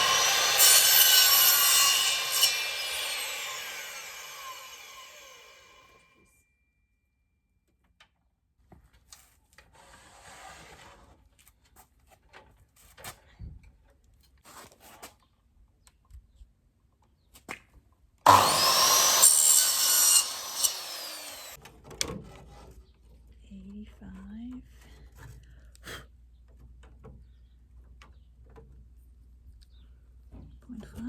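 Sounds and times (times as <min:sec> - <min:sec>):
power saw cutting wood: 0:00.0 - 0:06.1, 0:18.3 - 0:21.6.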